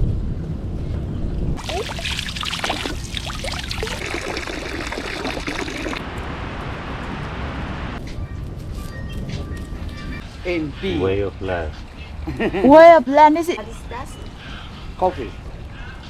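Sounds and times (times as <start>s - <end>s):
liquid pouring and splashing: 1.6s - 6.1s.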